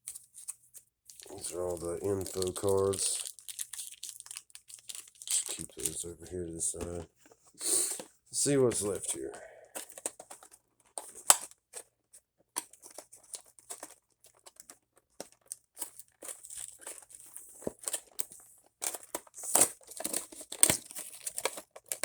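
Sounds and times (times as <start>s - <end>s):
plastic packaging crinkling and tearing: 0.0s - 7.0s, 12.6s - 22.0s.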